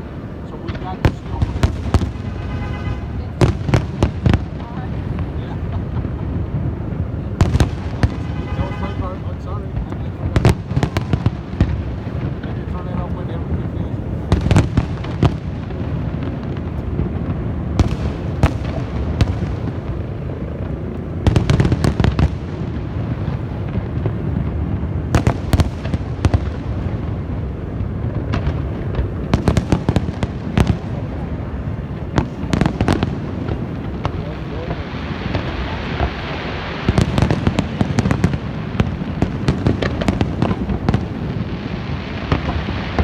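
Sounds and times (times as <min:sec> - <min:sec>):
fireworks rumbling: 0:00.0 - 0:43.0
fireworks sharp bangs: 0:00.0 - 0:43.0.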